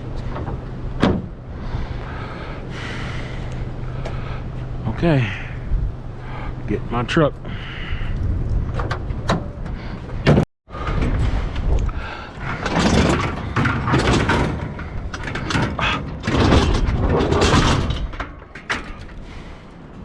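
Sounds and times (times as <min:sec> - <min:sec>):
wind rumble on microphone: 0:00.0 - 0:03.8, 0:05.0 - 0:20.0
scrap metal scraping and clanking: 0:12.3 - 0:19.6.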